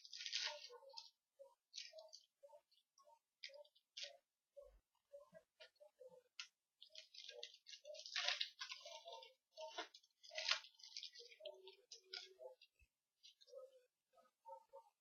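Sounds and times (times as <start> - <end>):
cards crinkling and rustling: 0.0 - 1.1, 6.4 - 12.6.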